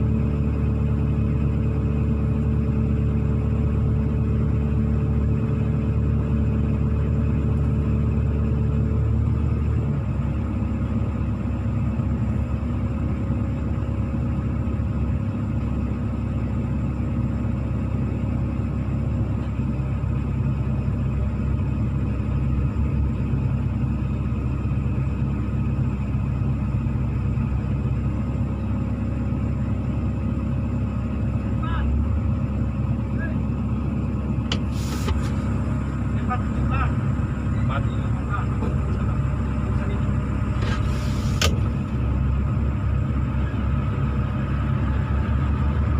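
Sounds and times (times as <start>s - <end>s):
diesel truck engine running: 0.0s - 45.9s.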